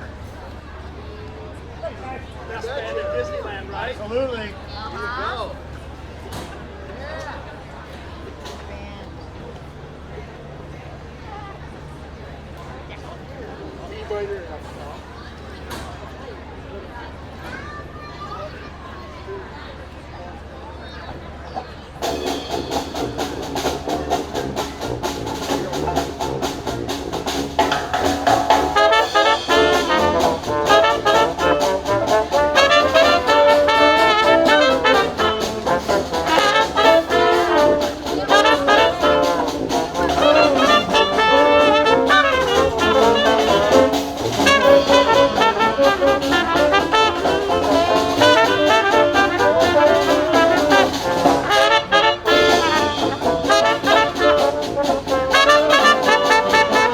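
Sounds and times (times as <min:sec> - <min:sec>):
jazz band playing: 0:22.0 - 0:56.9
trombone: 0:22.0 - 0:56.9
trumpet: 0:22.0 - 0:56.9.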